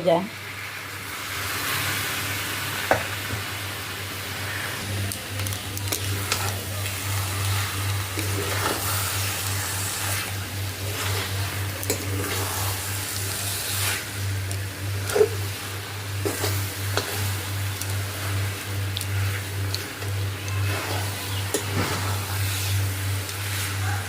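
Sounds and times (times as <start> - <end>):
sizzling: 0.0 - 24.0
steady low hum: 3.6 - 24.0
spoon stirring and scraping pan: 7.4 - 15.4, 16.2 - 23.8.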